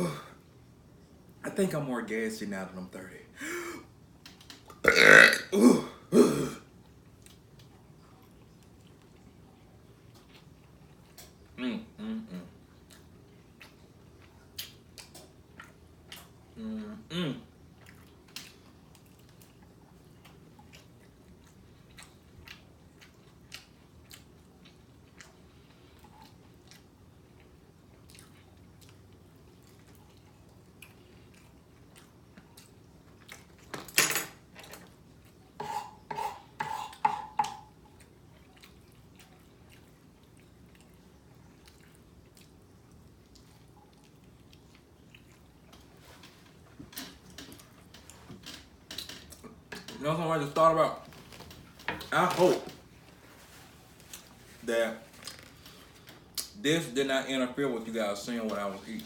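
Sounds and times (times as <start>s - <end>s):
mouth clicks and chewing: 17.8s - 33.6s, 37.9s - 46.5s.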